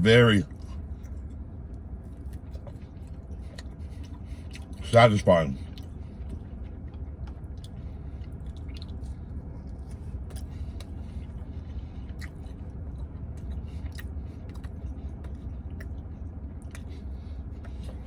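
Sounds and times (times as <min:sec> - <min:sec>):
steady low hum: 0:00.0 - 0:18.0
chewing and biting food: 0:00.5 - 0:04.8, 0:05.6 - 0:18.0.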